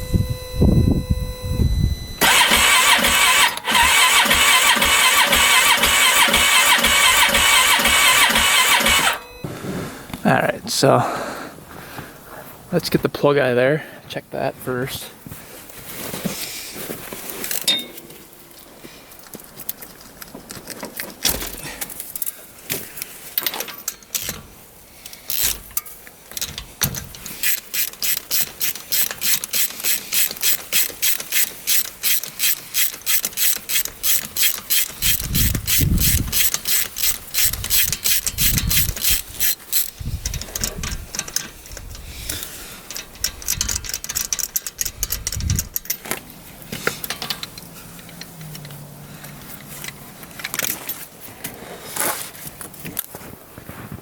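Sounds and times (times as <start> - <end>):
socket ratchet clicking: 2.2 - 9.2, 26.4 - 46.0.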